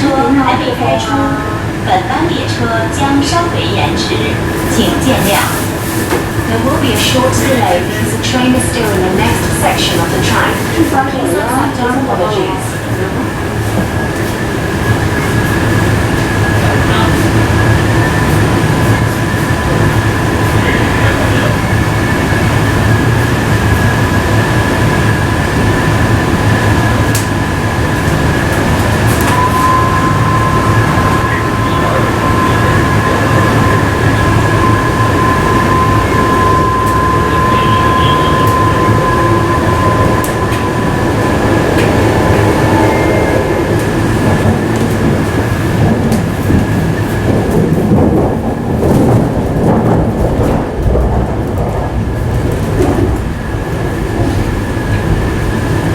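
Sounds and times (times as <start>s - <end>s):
train wheels rumbling on rails: 0.0s - 55.9s
high whine of traction motors: 14.2s - 48.8s.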